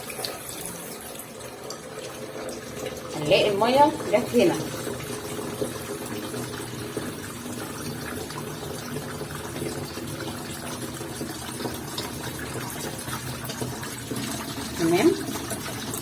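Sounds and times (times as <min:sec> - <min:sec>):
water running into washing machine tub: 0:00.0 - 0:16.0.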